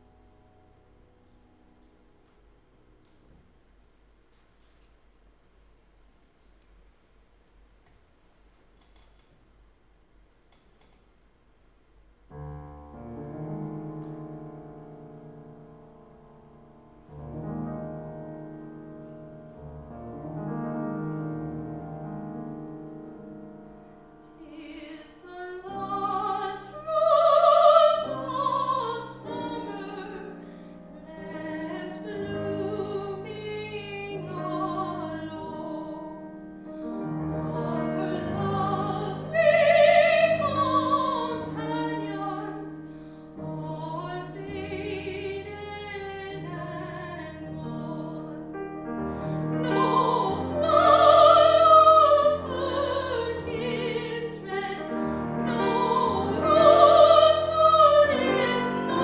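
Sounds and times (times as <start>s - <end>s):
piano accompaniment: 0.0s - 3.7s, 12.3s - 59.0s
operatic singing: 24.4s - 30.4s, 37.3s - 42.8s, 49.5s - 59.0s.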